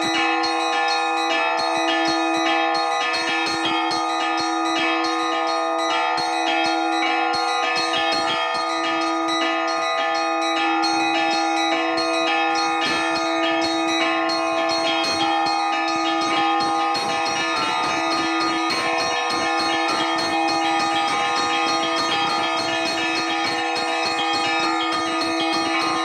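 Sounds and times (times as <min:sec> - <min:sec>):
large bells ringing: 0:00.0 - 0:26.0
small bells struck rapidly: 0:00.0 - 0:26.0.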